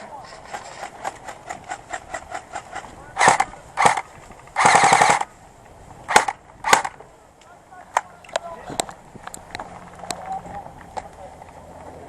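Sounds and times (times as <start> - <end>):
airsoft guns firing full auto: 0.5 - 5.3, 6.1 - 7.0.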